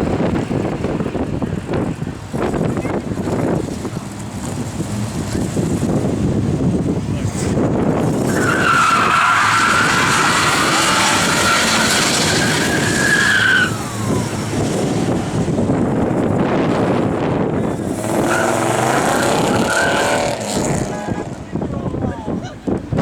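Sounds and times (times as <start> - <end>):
car tyres squealing: 0.9 - 22.7
car engine revving hard: 3.2 - 21.5.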